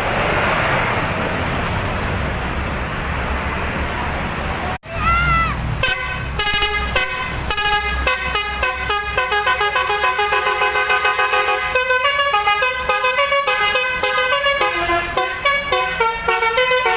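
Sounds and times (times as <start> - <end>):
bus horn playing a tune: 5.8 - 16.9.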